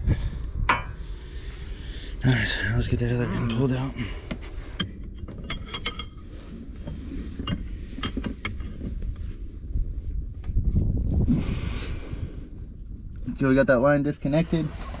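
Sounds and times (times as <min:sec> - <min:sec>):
low background rumble: 0:00.0 - 0:15.0
tools clinking on steel fittings: 0:04.8 - 0:06.4.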